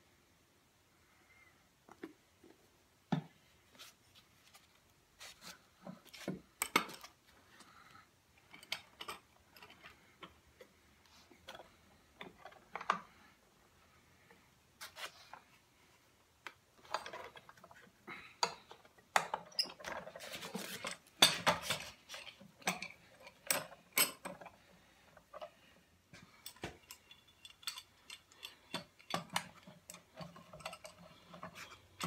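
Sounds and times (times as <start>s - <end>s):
wood and tools knocking and clattering: 3.0s - 3.5s, 5.8s - 7.3s, 16.4s - 32.0s.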